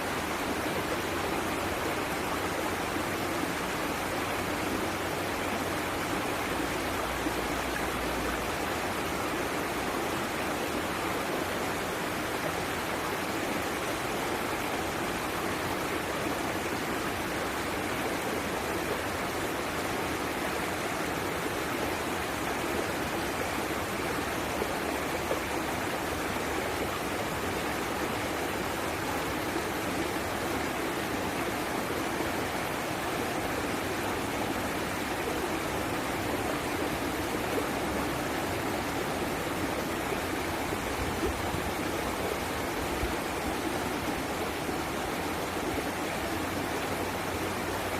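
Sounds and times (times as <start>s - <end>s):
running water rushing: 0.0s - 47.9s.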